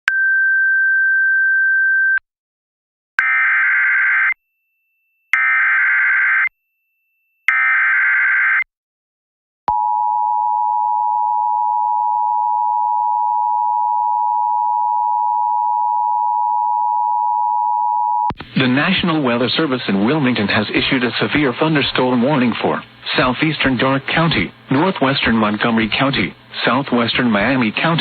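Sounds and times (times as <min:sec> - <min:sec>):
steady single tone: 0:09.7 - 0:18.3.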